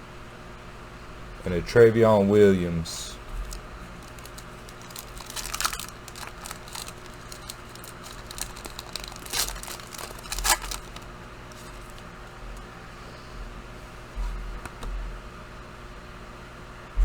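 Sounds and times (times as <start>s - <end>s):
cards and wrapper rustling: 3.3s - 12.7s.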